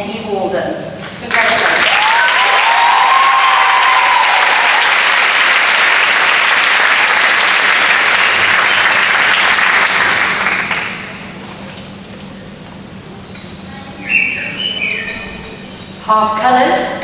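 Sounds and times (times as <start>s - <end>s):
audience applauding: 1.2s - 11.5s.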